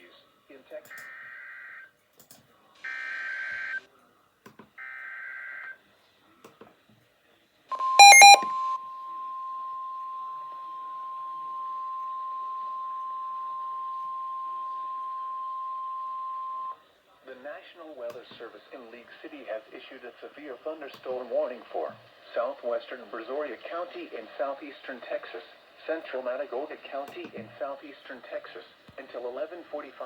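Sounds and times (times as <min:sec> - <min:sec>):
steady single-pitch alarm tone: 0:08.0 - 0:16.8.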